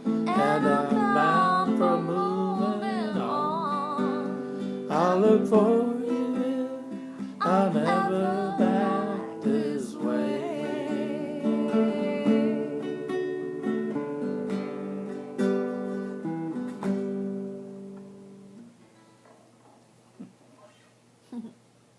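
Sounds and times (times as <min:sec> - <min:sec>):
person singing: 0:00.0 - 0:13.7
strummed acoustic guitar: 0:00.0 - 0:19.8.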